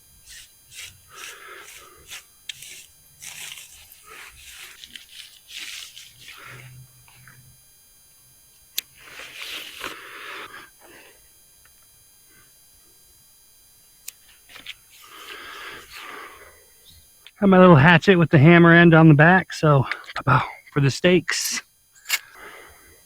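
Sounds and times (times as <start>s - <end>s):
tent fabric rustling and scraping: 3.2s - 6.8s, 9.0s - 10.0s.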